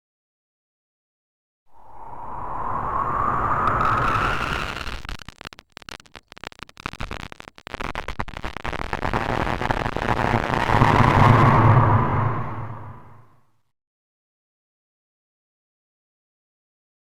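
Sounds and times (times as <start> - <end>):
rushing noisy drone: 1.7 - 5.6, 9.1 - 13.3
low hum: 10.6 - 13.4.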